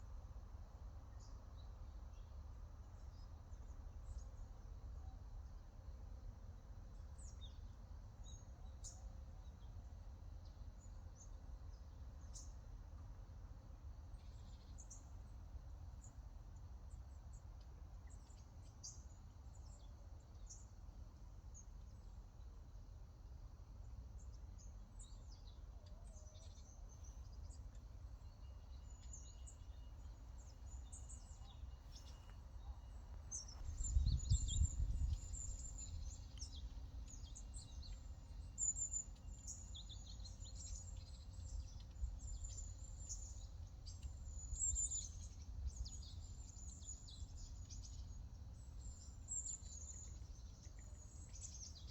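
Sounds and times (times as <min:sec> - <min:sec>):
steady low rumble: 0:32.9 - 0:37.2.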